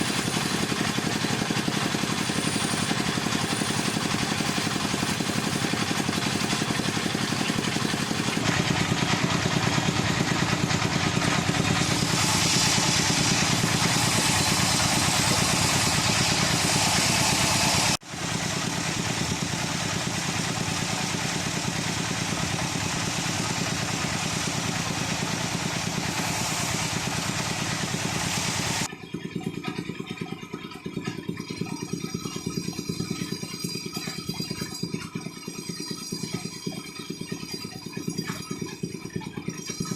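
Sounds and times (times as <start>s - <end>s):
tool shaving wood hissing: 0.0s - 28.9s
wood lathe humming: 0.0s - 28.9s.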